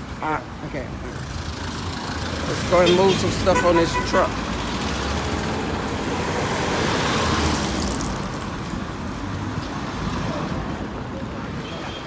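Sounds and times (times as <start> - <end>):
low traffic rumble: 0.0 - 12.0
vehicle passing by: 1.0 - 3.6, 4.2 - 10.7.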